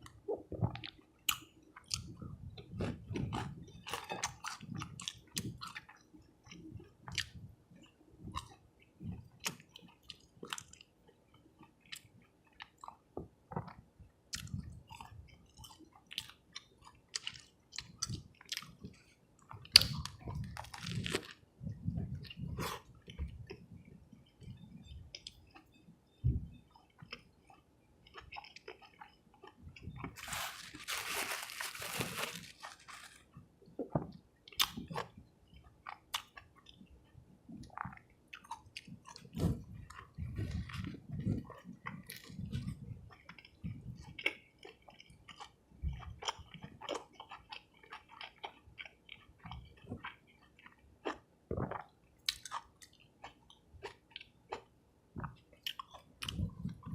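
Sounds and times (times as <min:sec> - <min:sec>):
chewing and crunchy bites: 0:00.0 - 0:10.9, 0:11.6 - 0:21.4, 0:24.4 - 0:33.3, 0:33.9 - 0:56.9
wet mouth clicks: 0:51.1 - 0:52.9.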